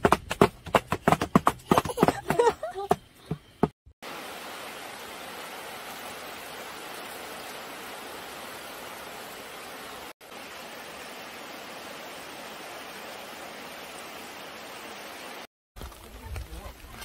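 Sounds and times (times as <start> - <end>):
heavy rain hiss: 4.0 - 15.5.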